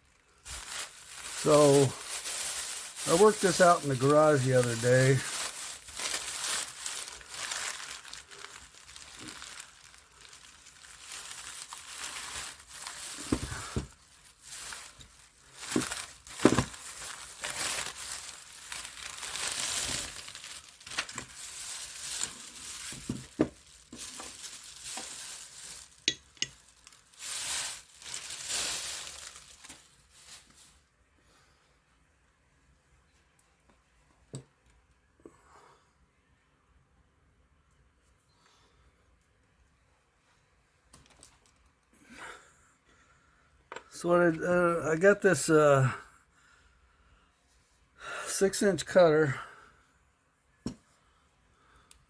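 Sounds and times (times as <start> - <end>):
packing material rustling: 0.0 - 30.9, 41.0 - 41.7.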